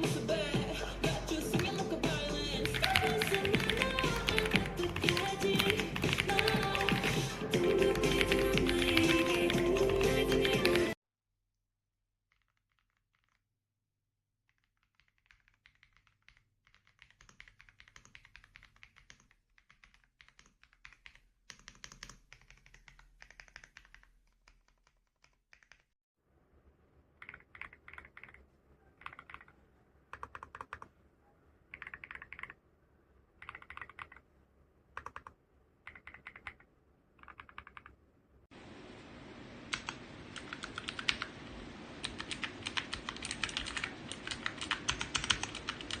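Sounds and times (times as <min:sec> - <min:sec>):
mechanical keyboard typing: 0:01.5 - 0:11.0, 0:14.5 - 0:25.9, 0:27.2 - 0:28.4, 0:29.0 - 0:30.9, 0:31.7 - 0:32.6, 0:33.4 - 0:34.2, 0:34.9 - 0:38.0, 0:39.7 - 0:41.4, 0:42.0 - 0:46.0.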